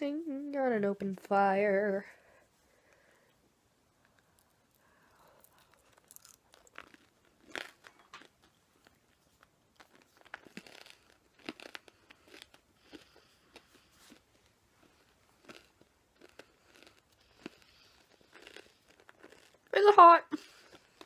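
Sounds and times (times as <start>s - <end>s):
crunching and chewing: 4.0s - 19.8s, 20.4s - 21.0s.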